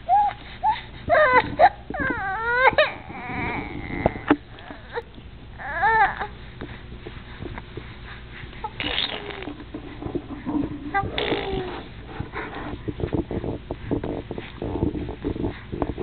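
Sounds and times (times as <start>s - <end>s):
baby crying: 1.1s - 6.4s.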